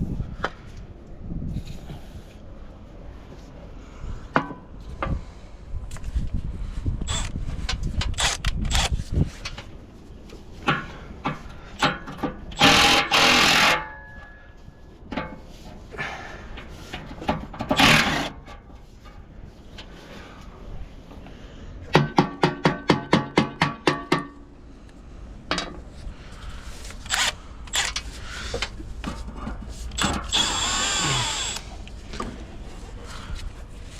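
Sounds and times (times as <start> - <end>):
hand tools knocking on metal: 21.9 - 24.4.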